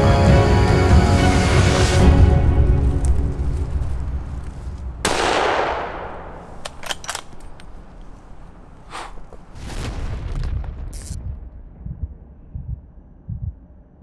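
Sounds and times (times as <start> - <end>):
low rumble: 0.0 - 14.0
sharp cracks: 2.9 - 11.4
loud gunshot: 5.0 - 6.5.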